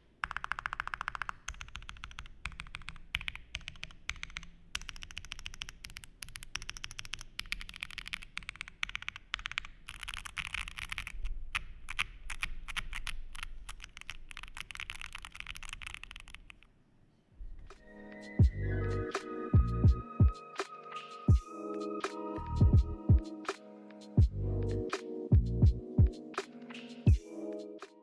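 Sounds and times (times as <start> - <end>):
mechanical keyboard typing: 0.0 - 16.7.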